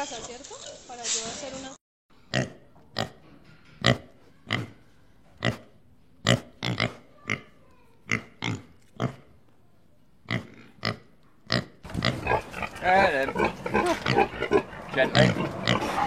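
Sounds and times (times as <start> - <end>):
pig grunting: 5.4 - 9.3, 10.3 - 16.0.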